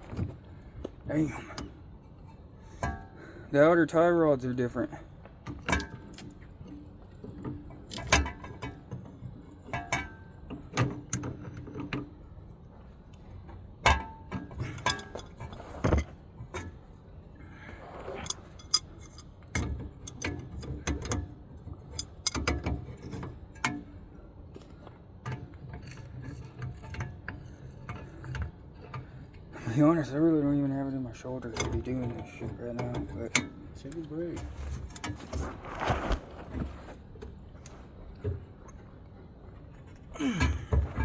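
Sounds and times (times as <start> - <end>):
rustling scrape: 17.7 - 18.7, 34.5 - 38.0
metal tools clinking: 18.1 - 19.4, 21.8 - 22.6.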